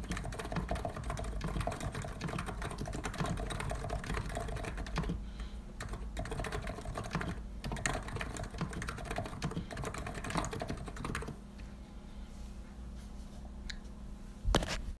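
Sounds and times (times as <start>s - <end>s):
keyboard keystrokes: 0.0s - 5.2s, 5.8s - 11.4s.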